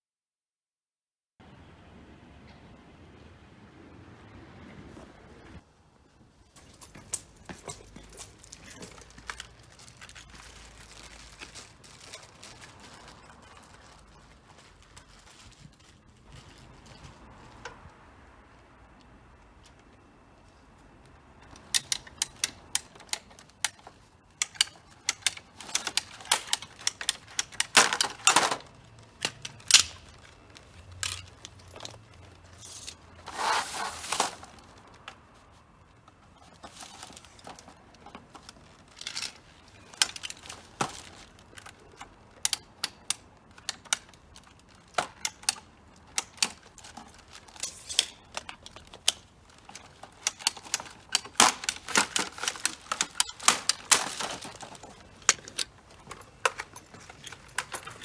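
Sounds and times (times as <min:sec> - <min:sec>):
hand tools clicking and knocking: 0:06.6 - 0:15.9, 0:21.4 - 0:35.3, 0:36.0 - 0:58.0.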